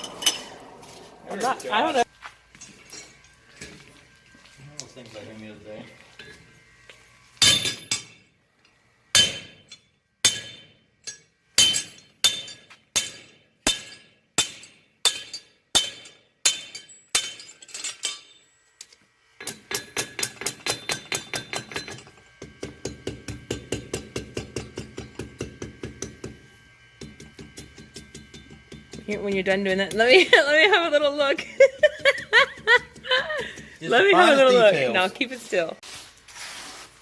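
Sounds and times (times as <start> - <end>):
hammer clanging on anvil: 7.4 - 8.3, 9.2 - 18.5, 19.4 - 22.1.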